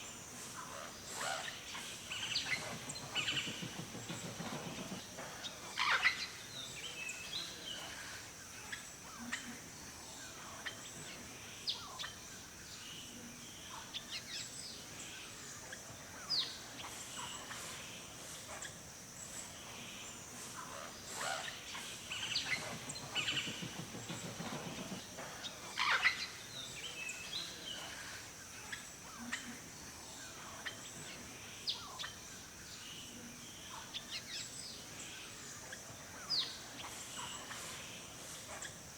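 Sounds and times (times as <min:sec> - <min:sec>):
forest birds chirping: 0:00.0 - 0:38.9
steady high hiss: 0:00.0 - 0:38.9.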